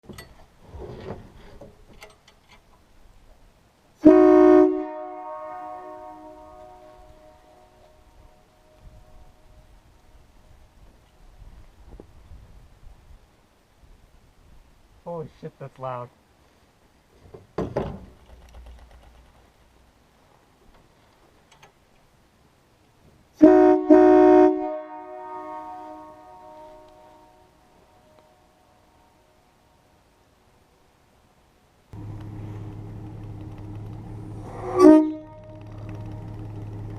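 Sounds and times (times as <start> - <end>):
train air horn chord blast: 4.0 - 9.4, 23.4 - 29.3, 34.4 - 35.7.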